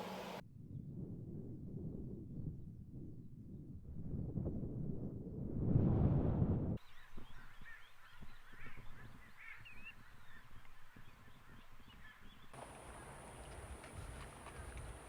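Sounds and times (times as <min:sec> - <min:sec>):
steady high whine: 0:00.0 - 0:00.4.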